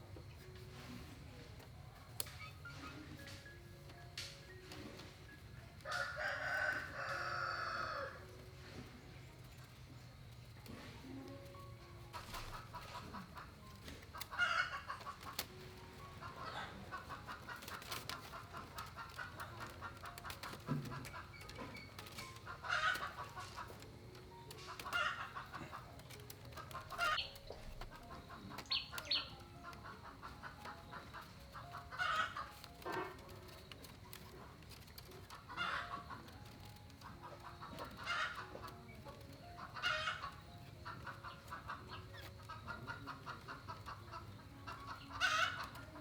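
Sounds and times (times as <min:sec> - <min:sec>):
chickens clucking: 0:00.0 - 0:46.0.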